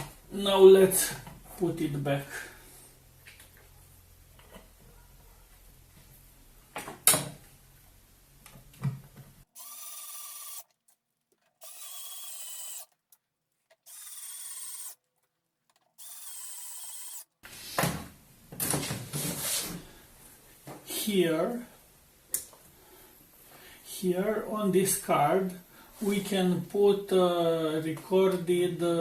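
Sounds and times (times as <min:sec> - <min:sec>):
small power tool whirring: 0:09.6 - 0:10.8, 0:11.6 - 0:13.0, 0:13.7 - 0:15.0, 0:15.9 - 0:17.3
rattling and knocking of pieces: 0:10.7 - 0:11.7.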